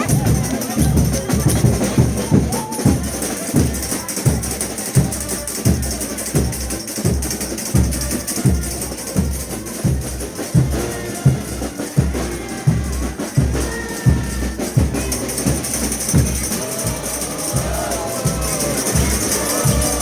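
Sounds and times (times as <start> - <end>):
bass drum beating: 0.0 - 4.4
street band playing: 0.0 - 20.0.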